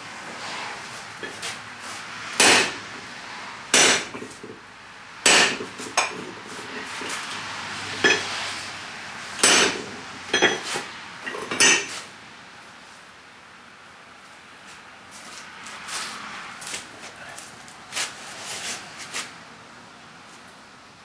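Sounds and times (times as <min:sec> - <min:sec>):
hammer striking hot steel: 0:02.3 - 0:03.0, 0:03.7 - 0:04.4, 0:05.2 - 0:06.2, 0:09.4 - 0:10.9, 0:11.5 - 0:11.9.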